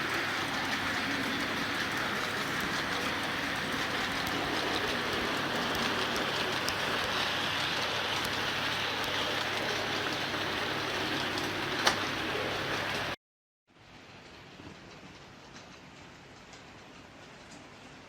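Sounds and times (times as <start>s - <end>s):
freight train rolling past: 0.0s - 13.2s.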